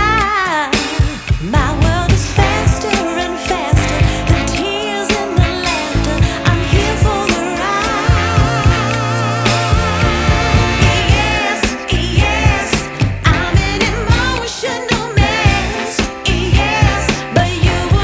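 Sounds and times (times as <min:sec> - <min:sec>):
soul-pop song with singing: 0:00.0 - 0:18.0.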